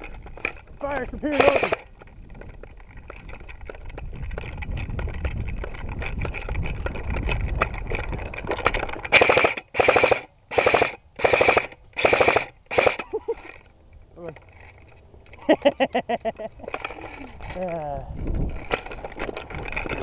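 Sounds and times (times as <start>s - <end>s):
airsoft gun firing: 1.3s - 1.9s, 9.1s - 13.0s.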